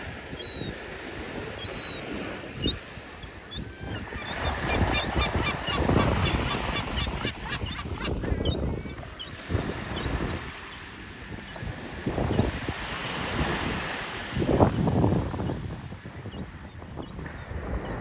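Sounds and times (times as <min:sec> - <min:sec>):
seagull squawking: 0:02.6 - 0:11.8.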